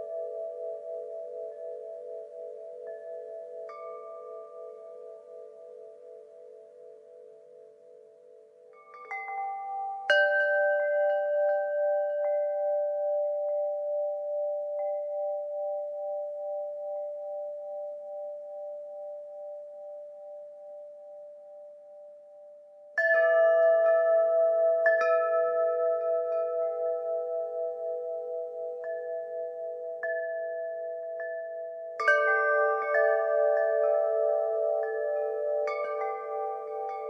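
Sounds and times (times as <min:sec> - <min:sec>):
wind chimes ringing: 0:08.8 - 0:18.4, 0:23.0 - 0:37.0.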